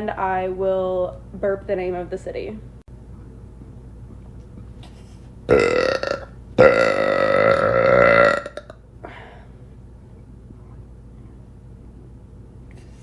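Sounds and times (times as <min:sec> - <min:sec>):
woman burping: 0:05.5 - 0:09.2.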